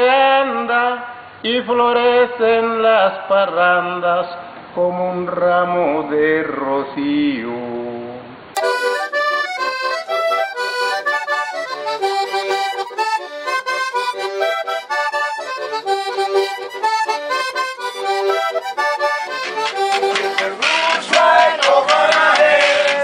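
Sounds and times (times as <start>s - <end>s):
accordion playing quick melody: 8.6s - 23.0s.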